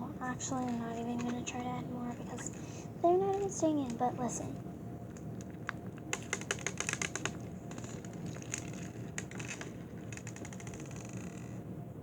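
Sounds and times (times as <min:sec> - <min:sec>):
slime crackling and popping: 0:05.0 - 0:11.4.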